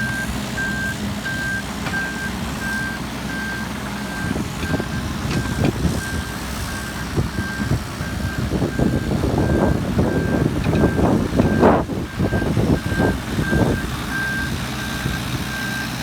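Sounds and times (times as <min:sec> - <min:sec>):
diesel engine running: 0:00.0 - 0:16.0
travel alarm beeping: 0:00.0 - 0:16.0
machine clanks and rattles: 0:09.4 - 0:11.8.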